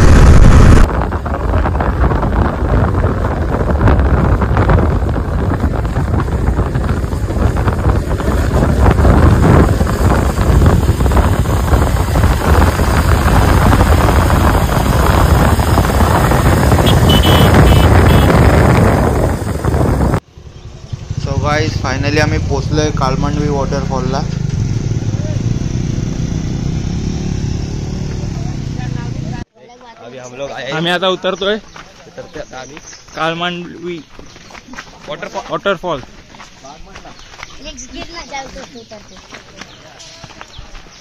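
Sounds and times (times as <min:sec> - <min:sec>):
wind buffeting microphone: 0:00.0 - 0:26.9, 0:36.0 - 0:41.0
motorcycle engine: 0:00.0 - 0:29.5
road noise: 0:00.0 - 0:41.0.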